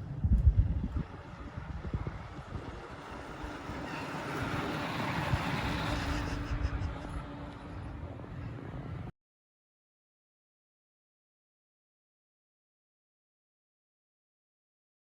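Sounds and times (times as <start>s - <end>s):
wind buffeting microphone: 0.0s - 9.1s
vehicle passing: 1.0s - 9.1s.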